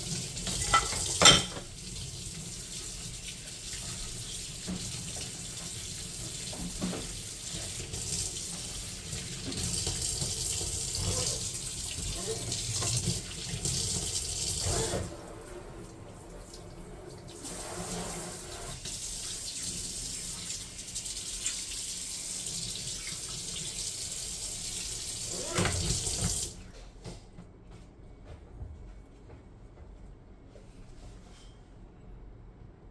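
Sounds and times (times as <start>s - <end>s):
dishes knocking and clinking: 0.4s - 1.7s.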